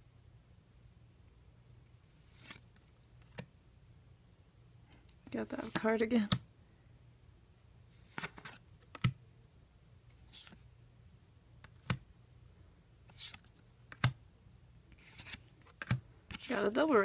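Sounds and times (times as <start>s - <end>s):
cards sliding against cards: 2.1s - 3.4s, 5.2s - 6.4s, 7.9s - 9.1s, 10.1s - 10.7s, 13.1s - 14.1s, 14.9s - 17.0s.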